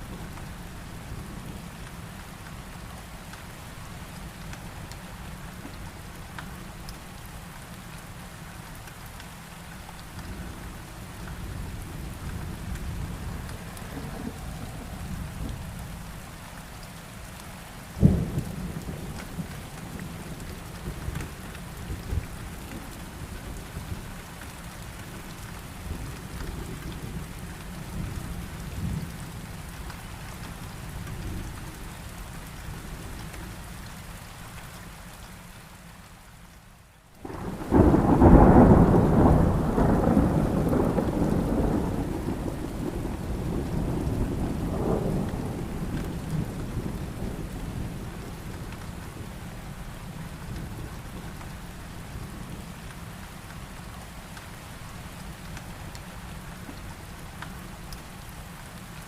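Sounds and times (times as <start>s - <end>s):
heavy rain falling: 0.0s - 59.0s
thunder rumbling: 11.6s - 16.2s, 37.2s - 49.4s.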